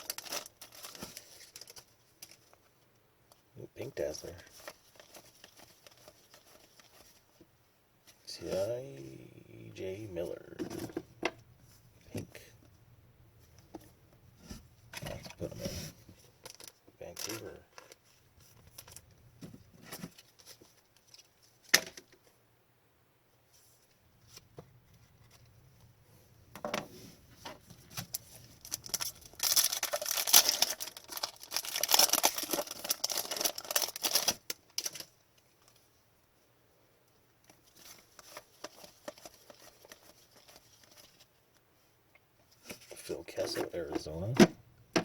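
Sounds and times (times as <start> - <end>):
foil wrapper crinkling and tearing: 0.0 - 2.6, 27.9 - 35.7, 37.6 - 41.3
trading cards being handled: 4.5 - 7.3, 14.9 - 19.1, 37.5 - 41.3.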